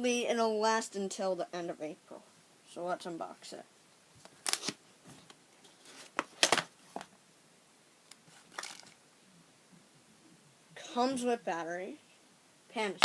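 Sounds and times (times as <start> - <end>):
packaging rustling and clicking: 8.2 - 9.0.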